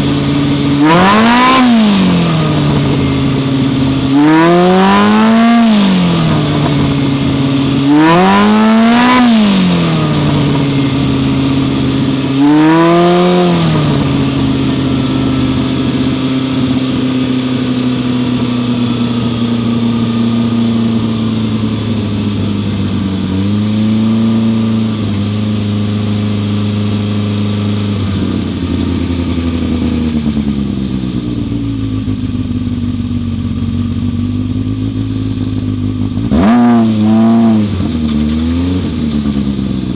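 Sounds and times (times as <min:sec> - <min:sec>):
engine revving and idling: 0:00.0 - 0:39.9.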